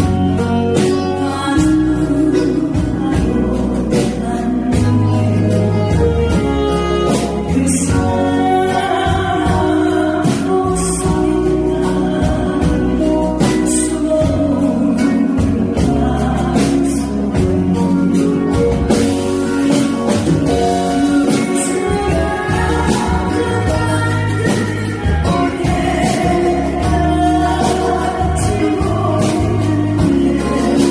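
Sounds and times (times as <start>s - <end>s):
instrumental music with steady beat: 0.0s - 30.9s
woman singing: 0.0s - 30.9s.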